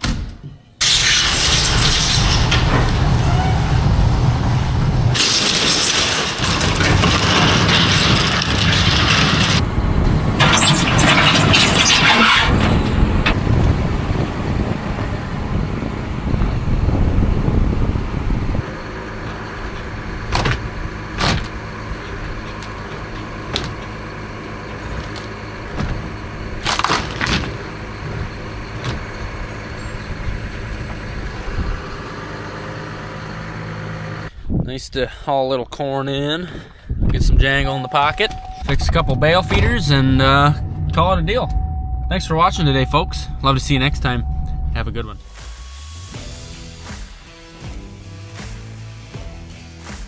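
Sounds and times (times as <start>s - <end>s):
rushing hiss: 0.8s - 2.7s
farm machine engine: 0.8s - 34.3s, 37.8s - 45.1s
sharp knocks: 19.2s - 21.7s, 22.4s - 24.0s.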